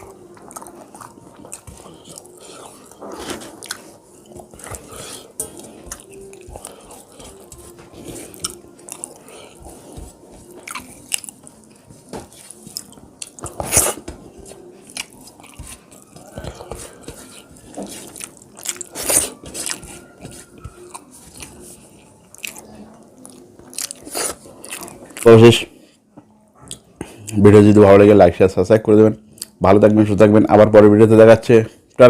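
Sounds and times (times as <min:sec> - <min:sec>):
close-miked chewing: 0:00.0 - 0:25.4.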